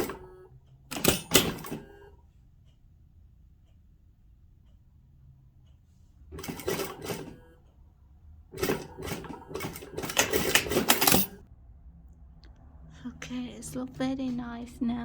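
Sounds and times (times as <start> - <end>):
sewing machine stitching: 0.0 - 2.2, 6.3 - 7.6, 8.5 - 11.4.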